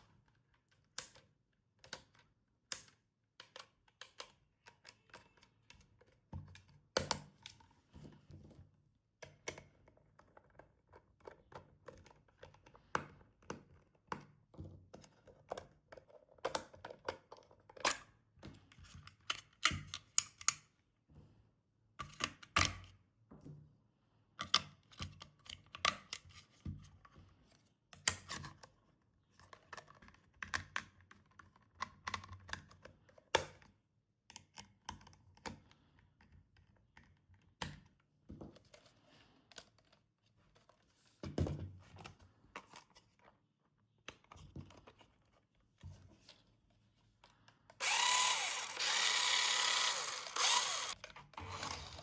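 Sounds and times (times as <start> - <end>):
toy car and packaging clicking: 47.8 - 52.0.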